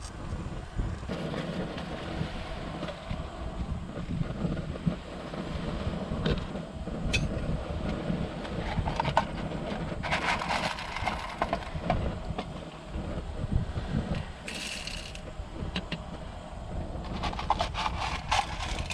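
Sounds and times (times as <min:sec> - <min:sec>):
wind buffeting microphone: 0:00.0 - 0:18.9
objects clattering and crinkling: 0:10.0 - 0:11.8, 0:17.1 - 0:18.9.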